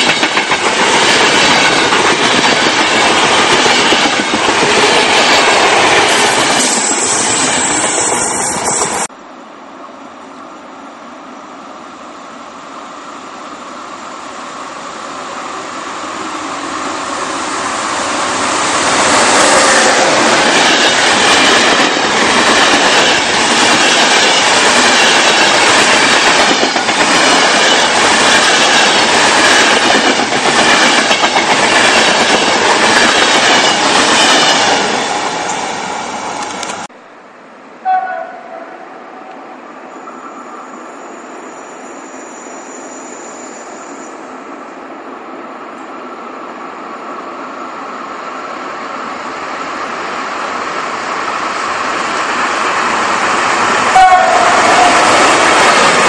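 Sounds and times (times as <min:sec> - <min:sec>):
train wheels clacking on rails: 0:00.0 - 0:09.1, 0:17.9 - 0:35.7, 0:50.6 - 0:56.0
high pitched train toot: 0:37.8 - 0:44.2, 0:53.9 - 0:55.4.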